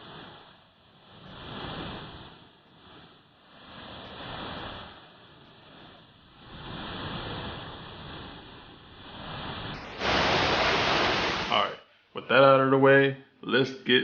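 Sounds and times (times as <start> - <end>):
soft rushing noise: 1.0 - 12.1.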